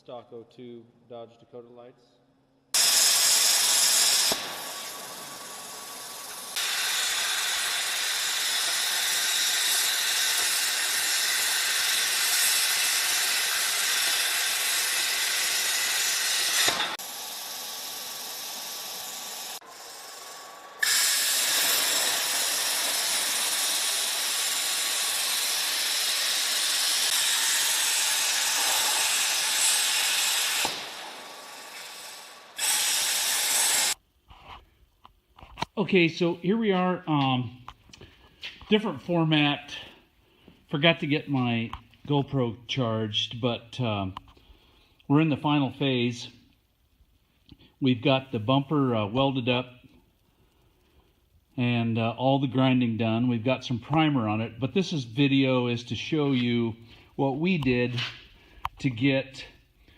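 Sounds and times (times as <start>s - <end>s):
plasma cutter hissing: 2.8s - 34.0s.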